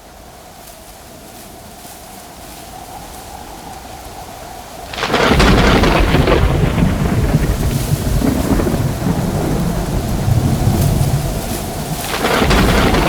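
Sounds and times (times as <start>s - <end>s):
steady rain: 0.0s - 13.0s
thunderclap rumbling: 4.8s - 13.0s.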